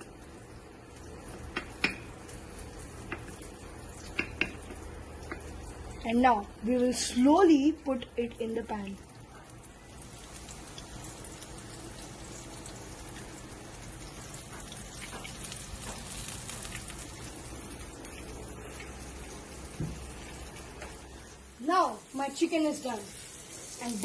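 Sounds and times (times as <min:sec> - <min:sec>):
chicken frying in hot oil: 0:00.0 - 0:24.0
soft knock: 0:19.8 - 0:20.0.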